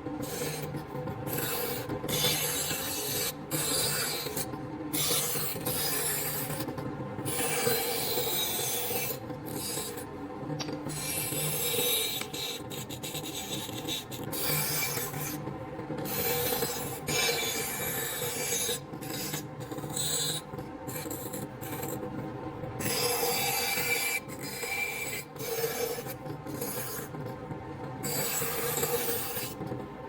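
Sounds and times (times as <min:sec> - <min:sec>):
wood being filed or sanded: 0:00.2 - 0:00.7, 0:01.3 - 0:04.4.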